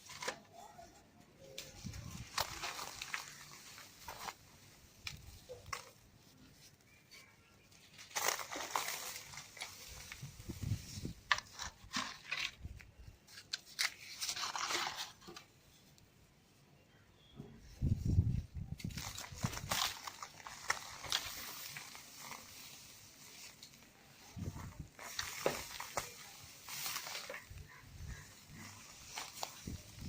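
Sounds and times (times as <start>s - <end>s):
cement crushing and crunching: 1.8s - 6.0s, 7.9s - 12.9s, 18.8s - 23.8s, 24.4s - 30.0s.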